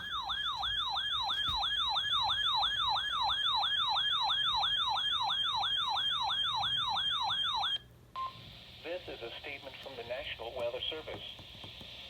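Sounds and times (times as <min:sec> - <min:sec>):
electronic siren yelp: 0:00.0 - 0:07.8.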